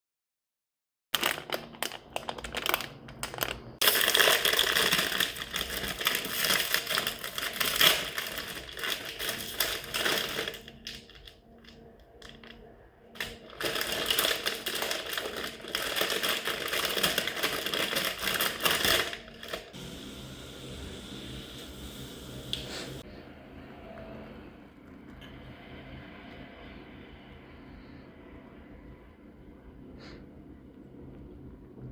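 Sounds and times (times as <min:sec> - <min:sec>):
plastic packaging crinkling: 0:01.2 - 0:19.8.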